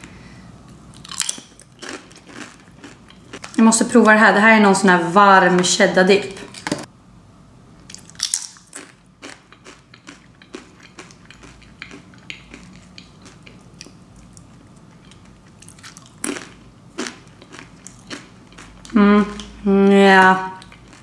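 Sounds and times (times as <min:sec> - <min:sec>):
crunchy bites: 0:01.0 - 0:03.6, 0:07.9 - 0:14.0
chewing with mouth clicks: 0:07.9 - 0:19.6.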